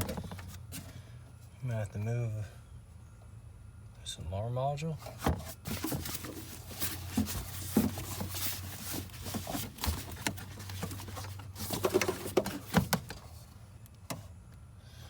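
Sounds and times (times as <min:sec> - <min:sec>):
steady low hum: 0:00.0 - 0:15.0
plastic and foam rustling: 0:05.0 - 0:13.5.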